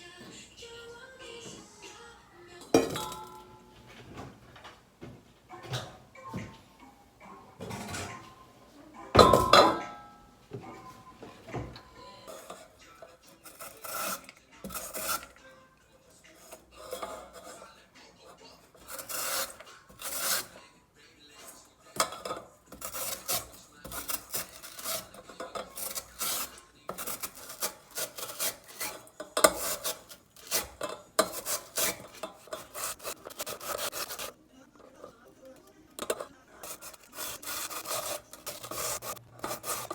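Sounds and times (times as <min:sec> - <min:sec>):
potato grating strokes: 0:13.3 - 0:15.4, 0:18.8 - 0:20.6, 0:22.7 - 0:34.4, 0:36.0 - 0:39.9.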